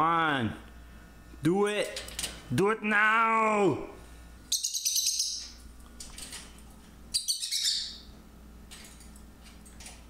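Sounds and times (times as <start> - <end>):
lovebirds chattering: 4.5 - 5.6, 7.1 - 8.1.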